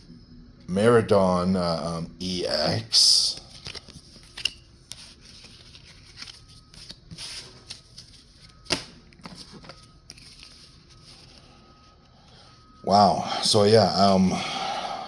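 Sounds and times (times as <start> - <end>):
trading cards rustling and clicking: 3.3 - 11.6.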